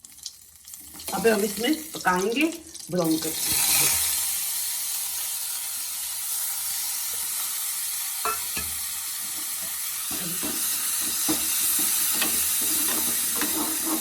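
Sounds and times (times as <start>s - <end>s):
ginger sizzling in ghee: 0.0s - 14.0s
stirring scrapes against pan: 9.4s - 14.0s.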